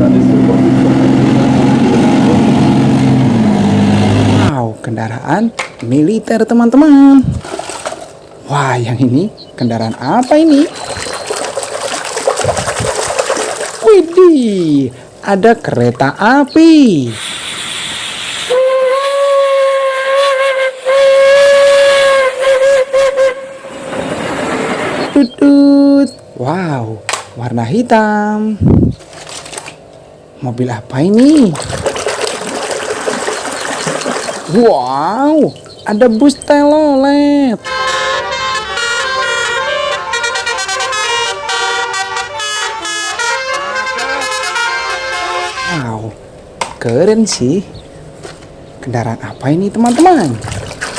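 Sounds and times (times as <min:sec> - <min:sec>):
brief hiss: 0:17.2 - 0:18.5
train whistle blasts: 0:17.2 - 0:23.9, 0:37.6 - 0:45.9
bus horn playing a tune: 0:18.5 - 0:24.0, 0:37.6 - 0:46.0.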